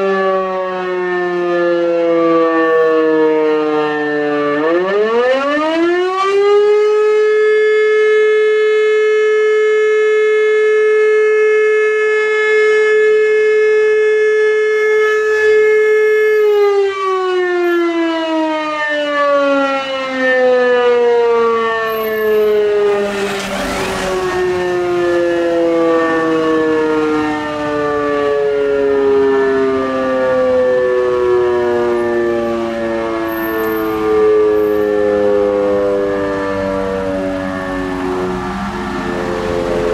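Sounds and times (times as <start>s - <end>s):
electric motor siren: 0.0s - 39.9s
rush of noise: 22.2s - 25.5s.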